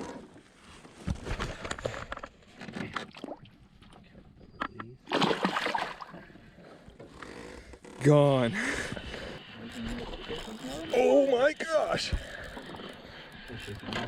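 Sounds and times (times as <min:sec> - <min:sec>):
water sloshing around boat: 0:02.0 - 0:14.0
loud splash: 0:05.1 - 0:06.0.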